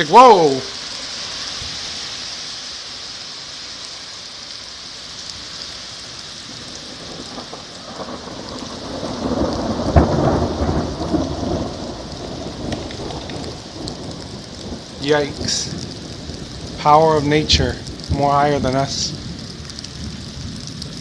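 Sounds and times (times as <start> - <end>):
heavy rain: 0.0 - 21.0
rolling thunder: 6.5 - 21.0.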